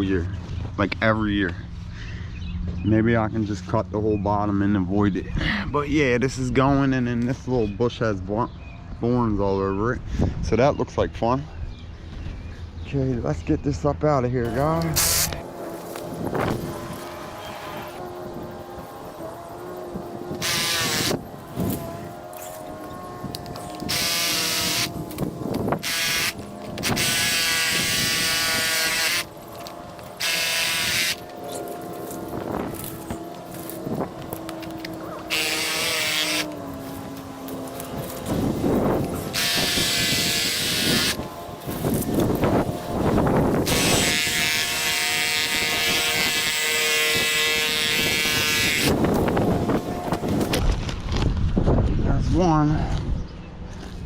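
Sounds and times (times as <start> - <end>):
reciprocating saw cutting wood: 14.4 - 50.6
power tool motor whining: 14.4 - 50.8
branches rustling: 14.4 - 51.8.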